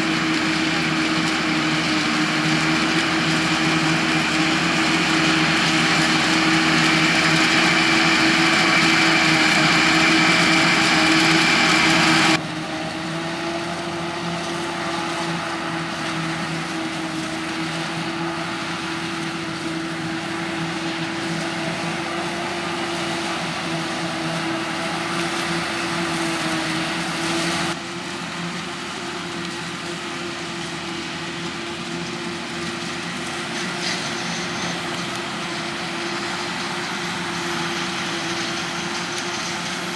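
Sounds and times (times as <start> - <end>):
harvest machinery engine drone: 0.0 - 39.9
high machine whine: 0.4 - 12.4.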